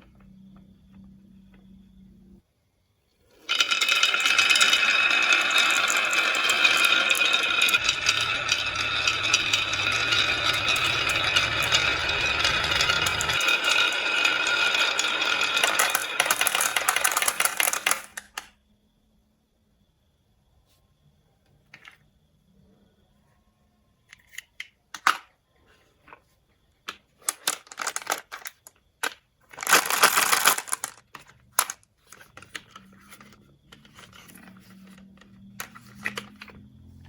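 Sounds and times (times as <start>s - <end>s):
marbles rattling down wooden track: 3.4s - 18.4s, 27.2s - 36.4s.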